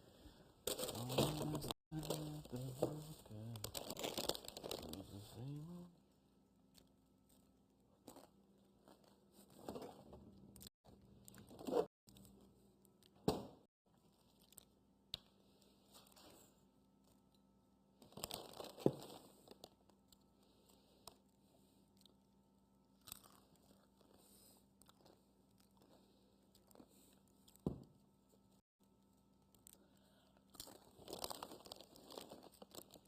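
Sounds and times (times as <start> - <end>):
food packaging crinkling and tearing: 0.7 - 5.2, 18.0 - 19.8, 30.6 - 33.0.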